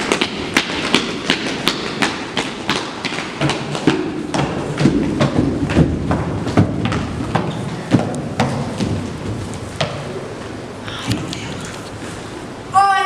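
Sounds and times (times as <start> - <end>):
sharp knocks and thuds: 0.1 - 10.2.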